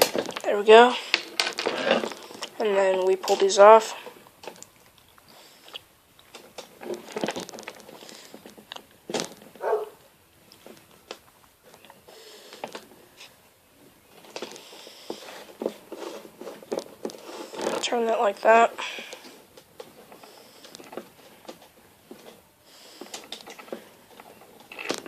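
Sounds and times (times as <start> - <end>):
plastic pieces clicking and snapping: 1.1 - 2.5.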